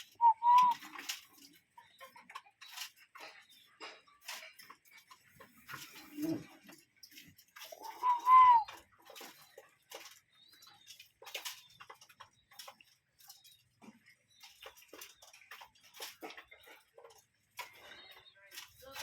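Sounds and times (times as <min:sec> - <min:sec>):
faint high bird chirps: 0:00.0 - 0:03.9, 0:07.6 - 0:13.7
quiet irregular clicks: 0:00.0 - 0:19.0.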